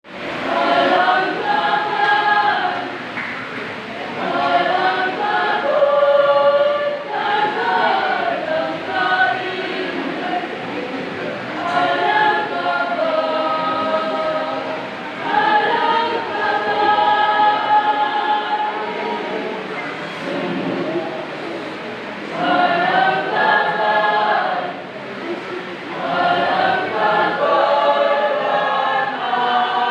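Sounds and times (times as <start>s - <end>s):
choir singing a hymn: 0.1s - 29.9s.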